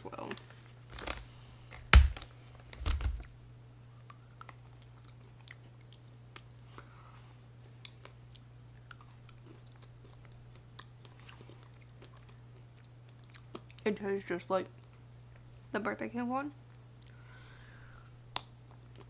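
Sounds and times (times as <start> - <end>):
person chewing candy: 4.0 - 13.9, 18.3 - 19.0.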